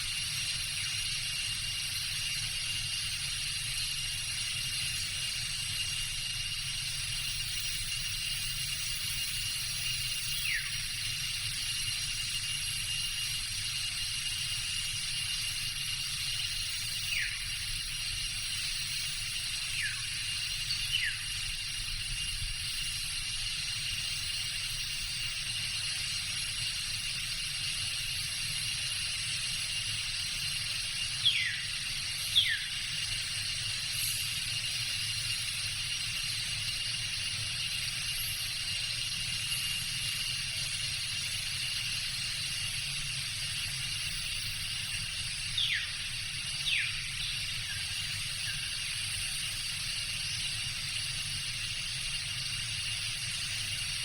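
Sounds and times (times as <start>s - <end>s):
insect chorus: 0.0s - 54.0s
bird whistling call: 10.4s - 10.8s, 17.1s - 17.5s, 19.7s - 21.3s, 31.2s - 32.9s, 45.6s - 46.0s, 46.6s - 48.7s.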